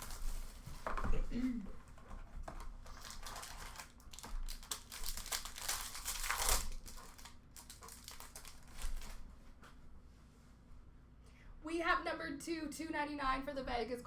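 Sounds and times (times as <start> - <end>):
plastic wrapping crinkling: 0.0 - 1.1, 2.0 - 9.4.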